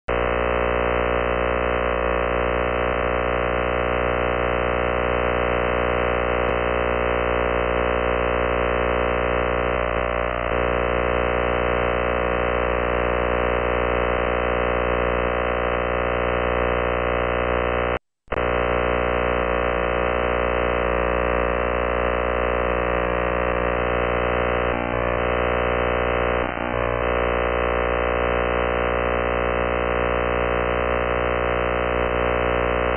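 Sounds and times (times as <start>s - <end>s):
radio interference buzz: 0.0s - 32.9s.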